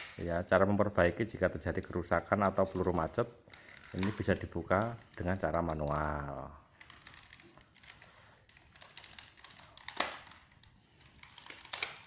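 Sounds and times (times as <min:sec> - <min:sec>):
plastic clicks and rattling: 0:02.5 - 0:06.2, 0:06.8 - 0:12.0.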